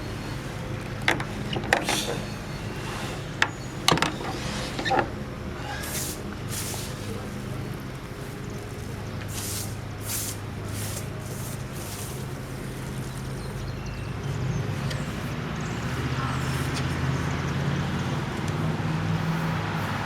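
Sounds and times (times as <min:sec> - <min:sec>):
background traffic hum: 0:00.0 - 0:20.0
short hissing rustles: 0:01.2 - 0:07.6, 0:08.2 - 0:13.3.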